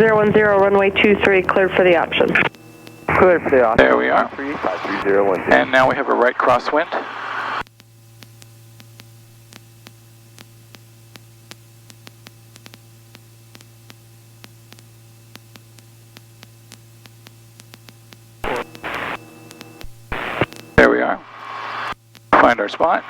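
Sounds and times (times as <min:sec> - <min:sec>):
intercom hum with hiss: 0:00.0 - 0:10.8, 0:16.5 - 0:23.0.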